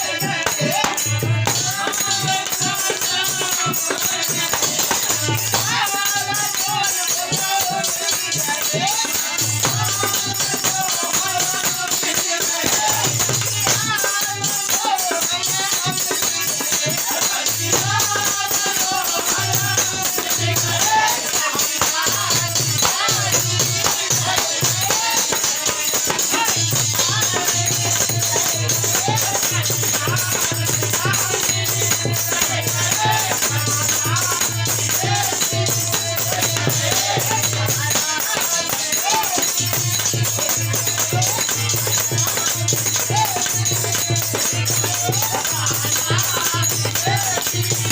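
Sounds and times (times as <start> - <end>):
hand drum beat: 0.0 - 47.9
jingling percussion: 0.0 - 47.9
man singing devotional song: 0.0 - 47.9.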